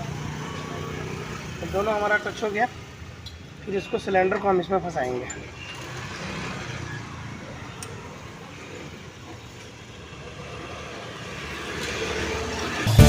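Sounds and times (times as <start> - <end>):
road traffic: 0.0 - 13.0.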